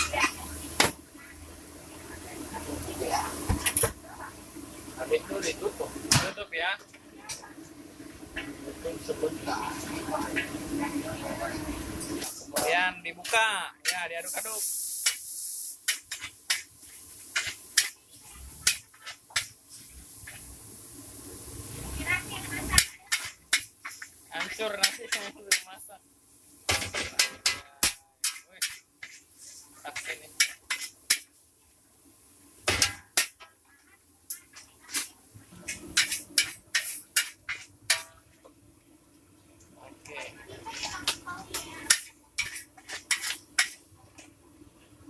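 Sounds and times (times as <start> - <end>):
pan sizzling: 0.0 - 45.0
metal spatula scraping a wok: 14.9 - 20.4, 28.2 - 31.3, 34.3 - 38.2, 40.7 - 43.8.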